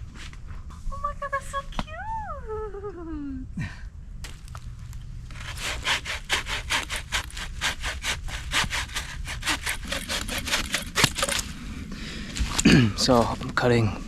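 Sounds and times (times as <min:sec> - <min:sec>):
saw cutting through branch: 0:05.3 - 0:11.6.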